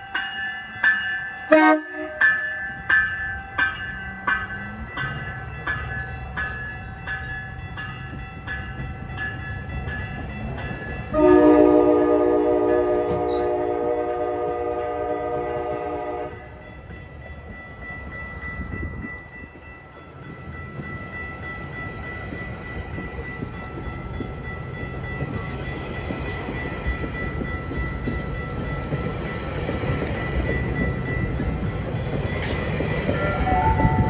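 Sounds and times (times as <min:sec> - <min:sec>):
train rumbling past: 0:00.0 - 0:34.0
train air horn chord: 0:01.5 - 0:02.4, 0:11.2 - 0:16.5
wheels clattering on rail joints: 0:16.8 - 0:34.0.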